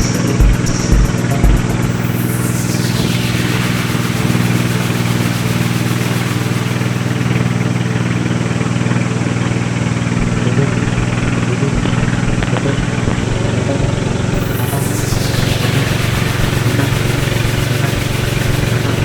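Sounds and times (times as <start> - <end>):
engine running steadily: 0.0 - 19.0
high whoosh falling in pitch: 0.0 - 19.0.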